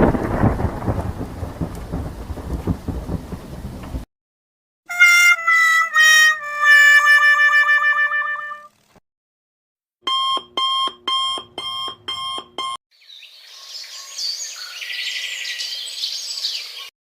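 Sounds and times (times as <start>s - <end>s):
alarm clock beeping: 10.1s - 12.8s
birds chirping: 13.0s - 16.9s.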